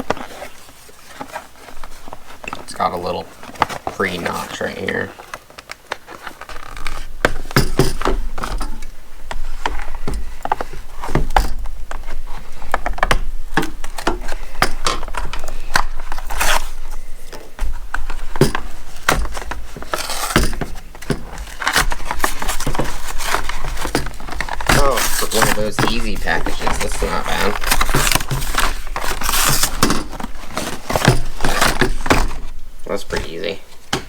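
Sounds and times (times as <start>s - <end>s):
packaging tearing and crackling: 21.4s - 32.5s.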